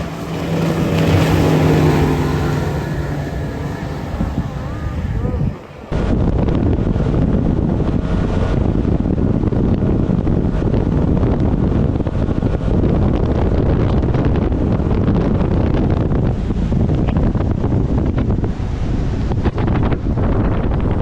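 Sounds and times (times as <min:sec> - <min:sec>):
water rushing: 0:00.0 - 0:06.0
outboard motor running: 0:00.0 - 0:06.2
wind buffeting microphone: 0:00.0 - 0:21.0.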